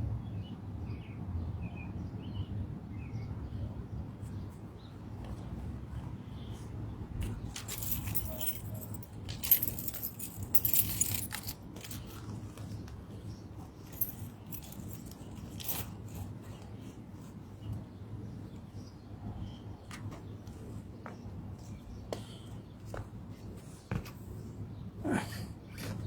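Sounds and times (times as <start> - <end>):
small metal pieces jingling: 7.5 - 12.3, 13.8 - 16.3.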